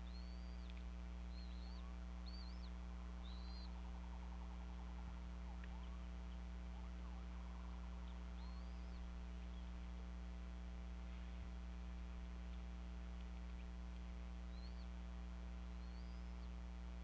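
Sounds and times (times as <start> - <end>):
bird chirps: 0.0 - 9.8, 14.5 - 15.0, 15.7 - 16.6.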